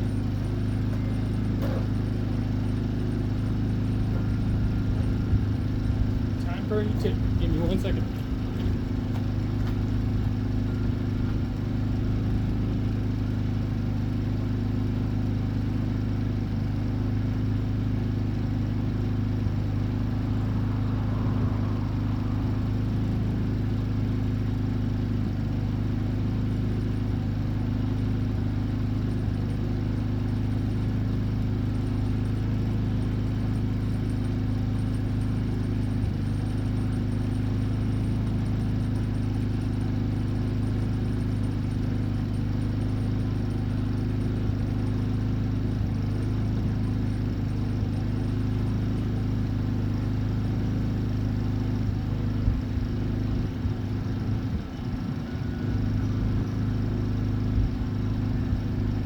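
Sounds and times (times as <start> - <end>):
shop machinery hum: 0.0 - 12.3.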